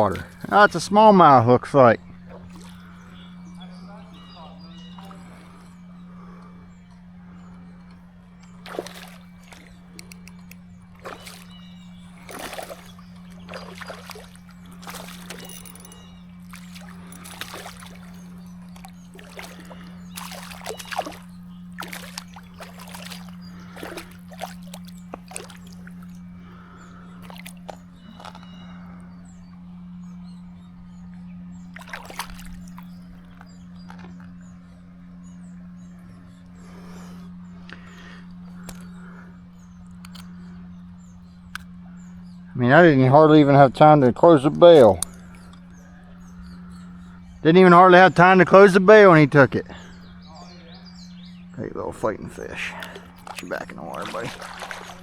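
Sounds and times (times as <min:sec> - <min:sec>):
stream trickling: 0:00.0 - 0:03.5, 0:08.4 - 0:28.4, 0:31.6 - 0:34.2, 0:52.0 - 0:55.0
low hum: 0:00.0 - 0:55.0
water splashing: 0:02.2 - 0:03.0, 0:08.6 - 0:28.4, 0:31.7 - 0:33.4, 0:52.6 - 0:55.0.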